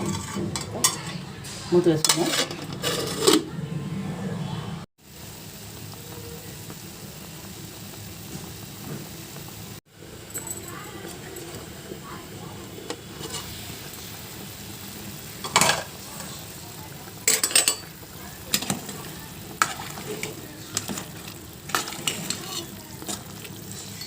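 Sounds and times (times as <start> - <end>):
pot boiling bubbling hiss: 0.0 - 24.0
metallic clinks of pot and utensils: 10.3 - 11.6, 17.2 - 17.9, 21.7 - 24.0.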